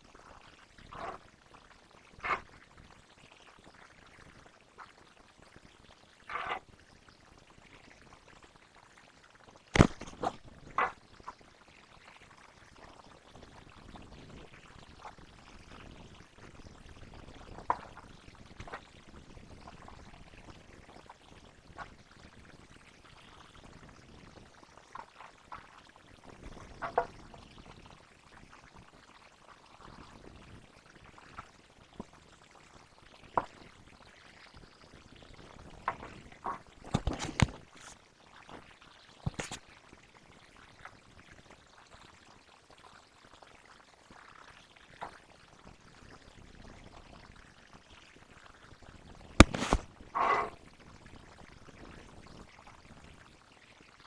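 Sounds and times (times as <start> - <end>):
slime being poured and mixed: 49.4 - 50.6.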